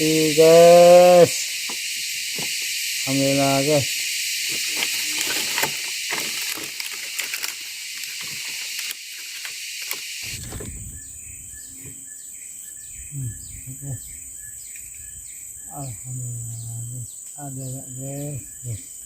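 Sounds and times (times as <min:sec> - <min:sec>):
insects droning: 0:00.0 - 0:19.0
rhythmic pulsing insect chorus: 0:00.0 - 0:19.0.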